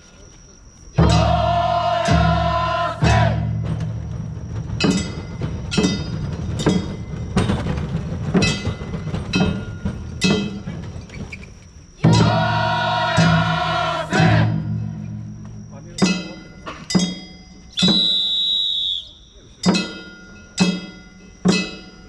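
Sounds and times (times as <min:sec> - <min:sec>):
ringing percussion strikes: 0:00.9 - 0:11.0, 0:12.0 - 0:18.3, 0:19.1 - 0:22.0
group of voices chanting: 0:01.0 - 0:03.6, 0:12.0 - 0:14.8.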